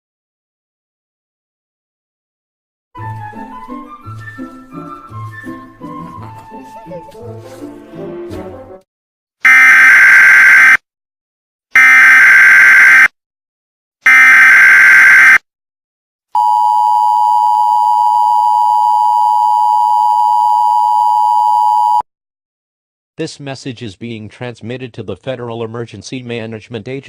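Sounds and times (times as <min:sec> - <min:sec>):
two-tone alert signal: 0:09.5 - 0:10.8, 0:11.8 - 0:13.1, 0:14.1 - 0:15.4.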